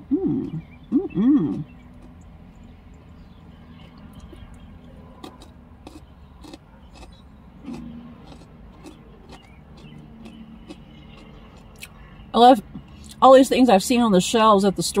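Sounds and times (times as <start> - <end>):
low background hum: 0.0 - 15.0
corn chips crunching while chewed: 4.1 - 12.0.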